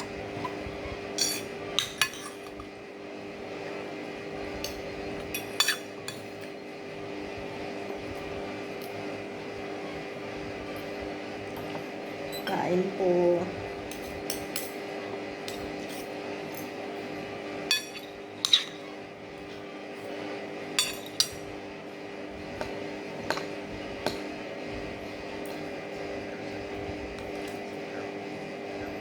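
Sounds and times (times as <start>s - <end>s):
steady low hum: 0.0s - 29.0s
cutlery clinking on a plate: 1.2s - 2.7s, 4.6s - 6.6s, 20.8s - 21.4s.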